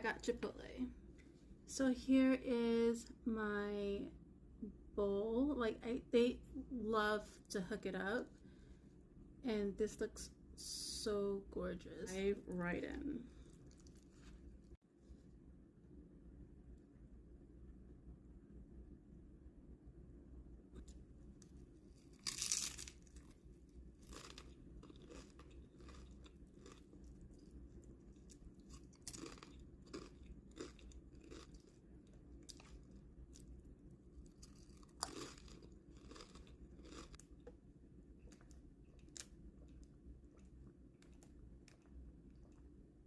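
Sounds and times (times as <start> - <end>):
chewing and crunching: 13.4 - 14.8, 22.0 - 37.6, 38.2 - 42.7.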